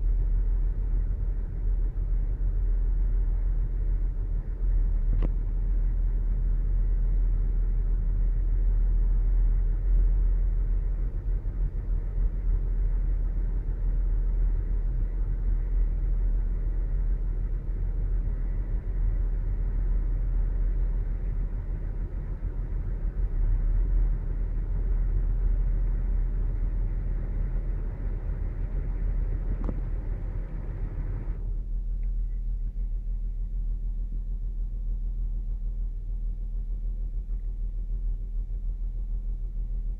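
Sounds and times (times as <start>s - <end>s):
engine low rumble: 0.0s - 39.9s.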